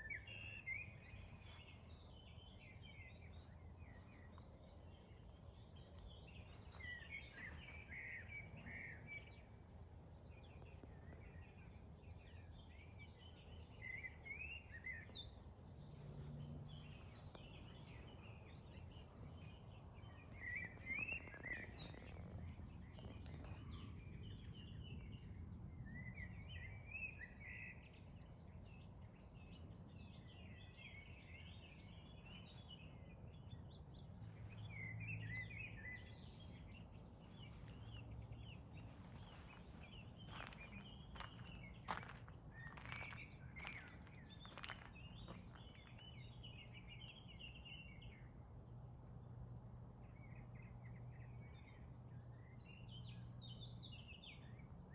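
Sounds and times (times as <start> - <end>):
low steady background noise: 0.0 - 54.9
birds chirping and singing: 16.2 - 48.2.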